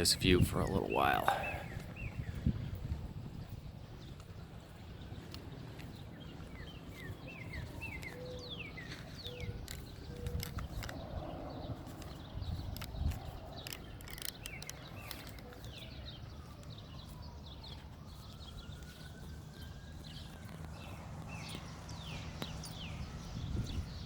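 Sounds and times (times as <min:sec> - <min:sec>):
birds chirping: 0:00.0 - 0:24.0
faint distant siren wailing: 0:00.0 - 0:24.0.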